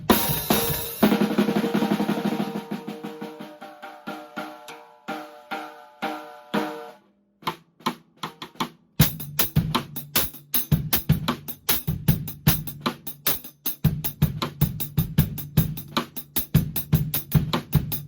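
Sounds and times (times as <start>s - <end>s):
drum kit playing: 0.0s - 18.0s.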